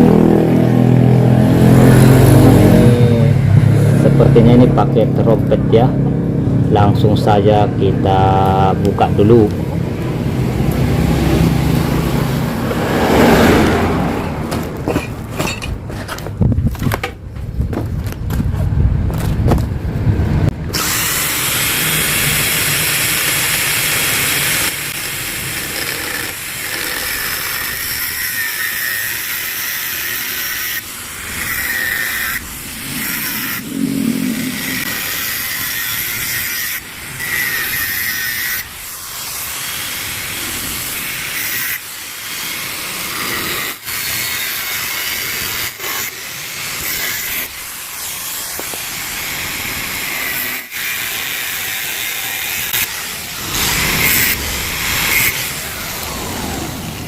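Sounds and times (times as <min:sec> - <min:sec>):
angle grinder cutting steel: 0:20.7 - 0:57.0.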